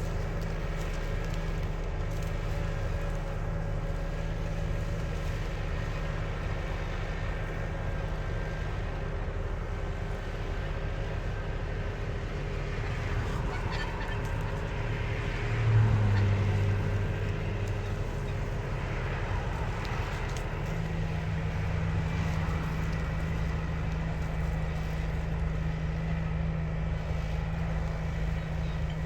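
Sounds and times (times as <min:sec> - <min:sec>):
tractor engine hum: 0:00.0 - 0:29.0
transmission gear whine: 0:00.0 - 0:29.0.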